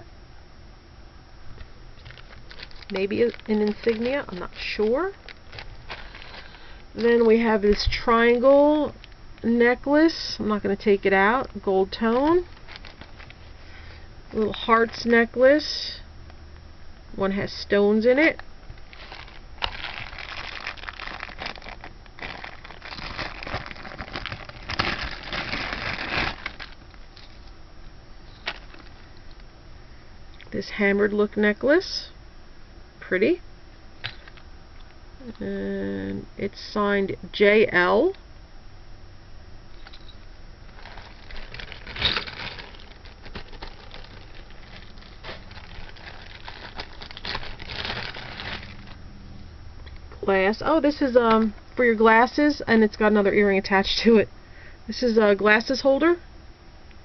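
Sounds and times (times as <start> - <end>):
plastic bags crinkling: 2.0 - 9.1, 10.6 - 15.4, 18.3 - 27.6, 28.3 - 29.4, 39.7 - 49.0.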